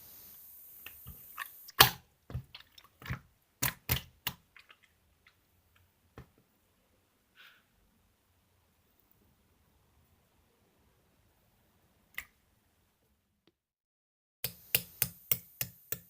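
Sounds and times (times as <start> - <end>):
steady hiss: 0.0 - 1.8, 14.5 - 16.0.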